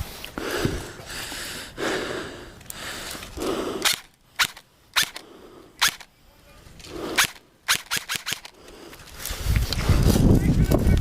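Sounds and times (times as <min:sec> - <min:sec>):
airsoft gun shots: 0:03.8 - 0:05.2, 0:05.8 - 0:06.1, 0:07.2 - 0:08.5.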